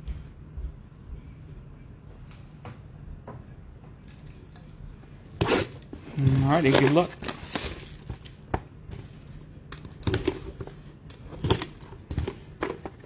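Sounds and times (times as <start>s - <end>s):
cards tapping and rustling: 6.0s - 8.7s
wrapper crinkling: 6.2s - 8.4s.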